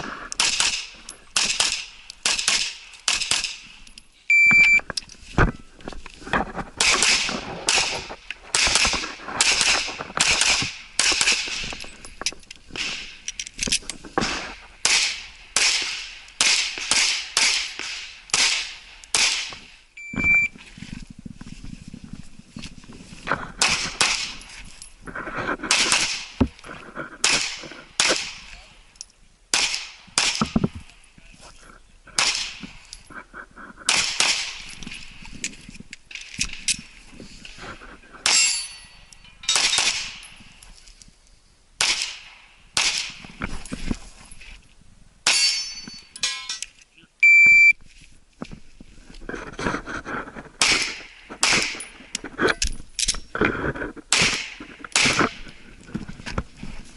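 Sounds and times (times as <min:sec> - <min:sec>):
shot timer beep: 0:04.3 - 0:04.8, 0:20.0 - 0:20.5, 0:47.2 - 0:47.8.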